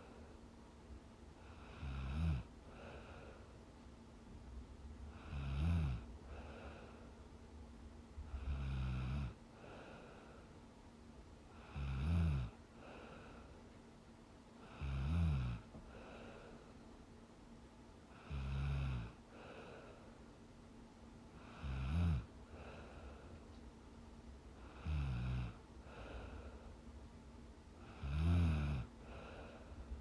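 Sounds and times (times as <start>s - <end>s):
soft breath: 0.0s - 0.6s, 2.6s - 3.9s, 6.1s - 7.4s, 9.4s - 11.8s, 12.5s - 14.9s, 15.6s - 17.1s, 19.1s - 28.1s, 28.8s - 30.0s
woman snoring: 1.5s - 3.0s, 5.1s - 6.9s, 8.4s - 9.4s, 11.5s - 13.0s, 14.6s - 15.7s, 18.1s - 19.2s, 21.4s - 22.8s, 24.6s - 26.5s, 27.8s - 29.6s.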